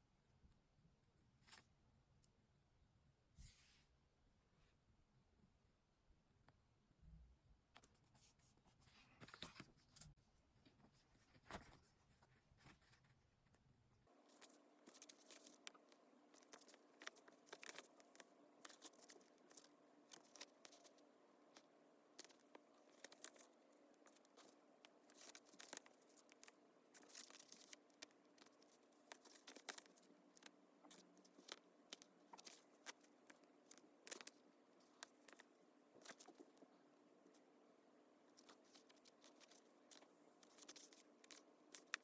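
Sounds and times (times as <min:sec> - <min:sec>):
faint steady hum: 0:00.0 - 0:42.0
paper and stickers crackling: 0:14.2 - 0:36.7, 0:38.3 - 0:42.0.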